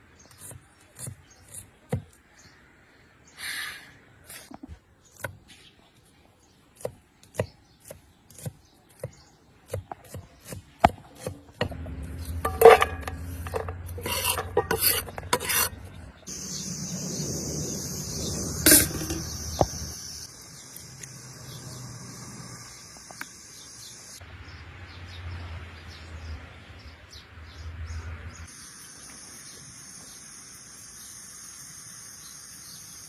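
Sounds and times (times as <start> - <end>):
food preparation scrapes and taps: 9.8 - 15.9
kitchen clatter: 12.3 - 15.6.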